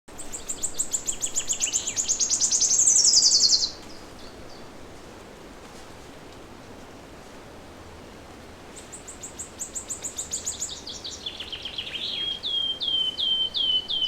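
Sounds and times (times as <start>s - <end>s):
songbird trilling: 0.2s - 3.8s, 9.0s - 14.0s
faint bird chirps: 0.2s - 4.6s, 8.8s - 14.0s.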